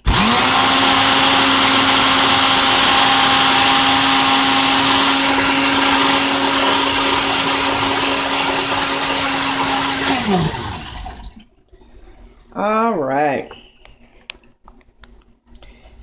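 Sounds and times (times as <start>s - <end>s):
blender motor whine: 0.0s - 11.4s.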